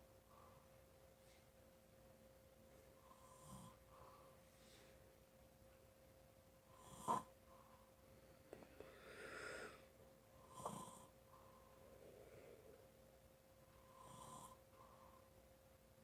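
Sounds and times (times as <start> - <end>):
person snorting in sleep: 3.0 - 3.8, 6.8 - 7.3, 8.9 - 11.2, 13.8 - 14.6
loud breathing in sleep: 8.8 - 12.8.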